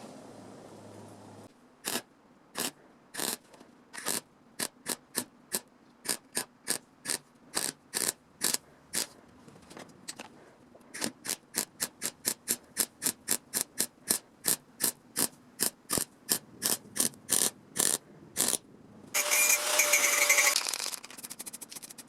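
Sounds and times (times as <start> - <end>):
hand tool rasping metal: 19.2 - 20.7.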